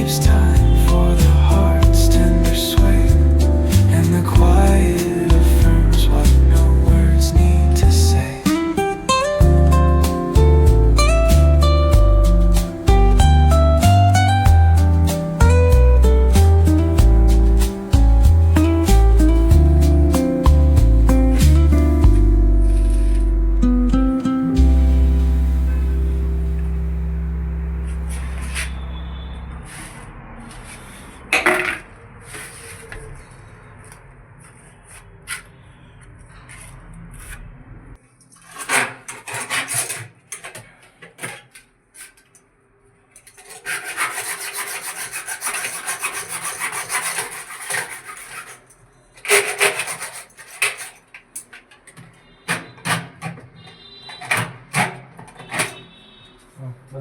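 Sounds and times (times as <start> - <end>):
rubbing and scraping: 0.0 - 8.6, 16.0 - 23.5, 25.3 - 42.5, 43.2 - 56.1
song ending: 0.0 - 28.7
steady rasping: 43.3 - 51.1.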